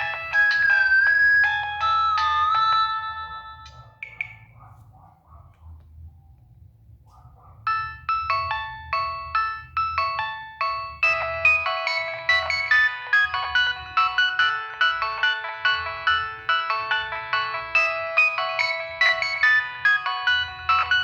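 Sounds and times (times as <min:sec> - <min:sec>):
polyphonic ringtone melody: 0:00.0 - 0:04.6, 0:07.7 - 0:21.0.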